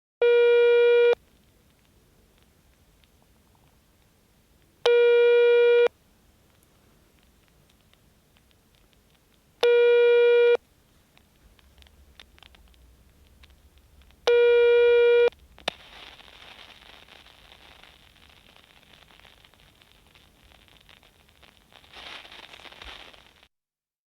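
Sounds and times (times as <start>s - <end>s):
telephone line tone: 0.2s - 1.2s, 4.9s - 5.9s, 9.6s - 10.6s, 14.3s - 15.3s
open phone line hiss: 14.2s - 15.3s.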